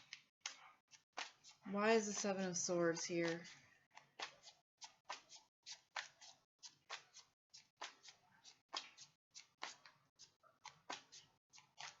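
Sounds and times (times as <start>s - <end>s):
cards being shuffled: 4.1s - 12.0s.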